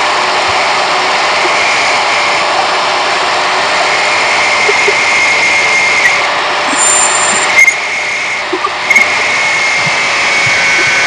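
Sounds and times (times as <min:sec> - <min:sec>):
electric power tool whining: 0:00.6 - 0:08.5.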